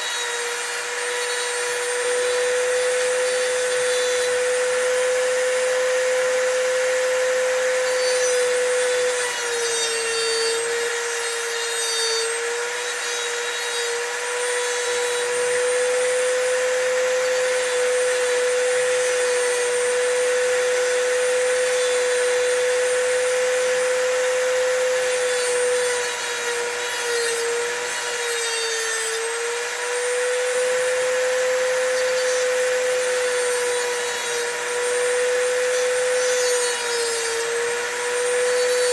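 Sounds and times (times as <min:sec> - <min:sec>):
rotary tool cutting a key: 0:00.0 - 0:23.0.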